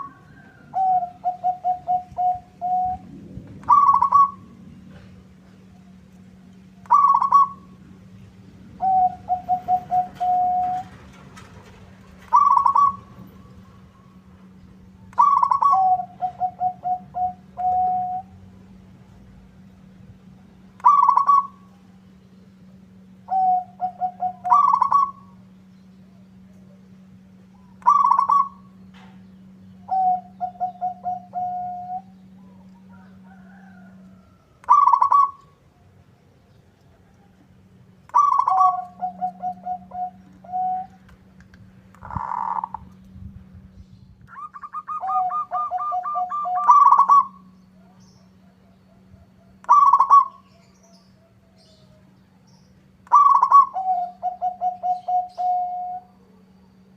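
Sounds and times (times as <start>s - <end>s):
dove cooing: 0.0s - 6.0s, 6.8s - 7.8s, 8.7s - 18.8s, 20.7s - 22.0s, 23.0s - 35.9s, 38.1s - 41.2s, 41.9s - 43.0s, 44.3s - 52.2s, 53.0s - 56.5s
steady low hum: 0.0s - 56.9s.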